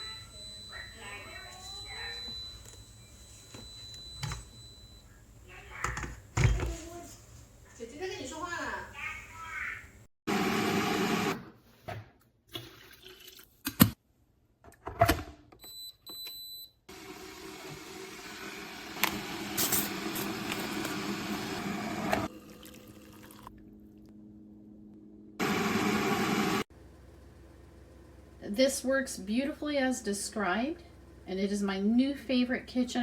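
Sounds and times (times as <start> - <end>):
kettle hum: 16.9 - 28.6.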